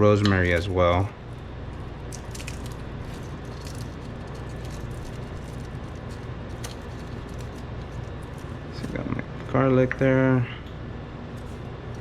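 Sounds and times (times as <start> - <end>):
appliance fan humming: 0.0 - 12.0
pan clicking and crackling: 2.0 - 8.8.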